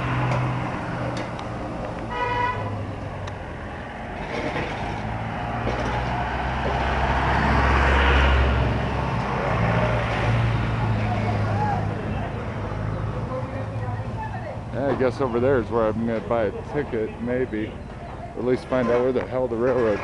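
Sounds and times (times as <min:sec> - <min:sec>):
vehicle engine rumbling passing: 0:00.0 - 0:20.0
vehicle horn toot: 0:02.1 - 0:02.8.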